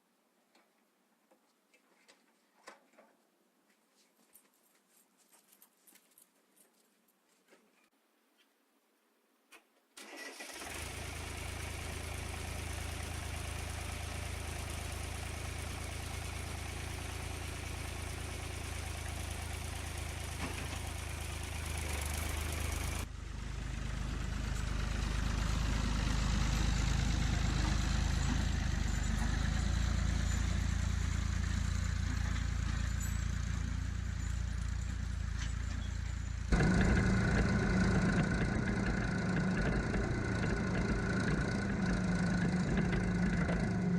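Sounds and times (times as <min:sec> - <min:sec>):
tractor engine idling: 0:10.0 - 0:43.9.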